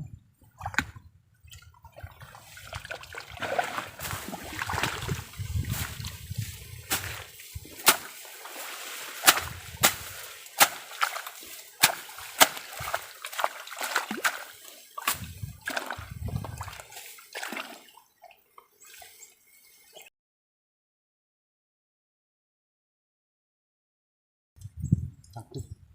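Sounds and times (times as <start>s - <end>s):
sharp clicks and splashes: 0.4s - 19.3s
water splashing in a stream: 0.5s - 19.9s.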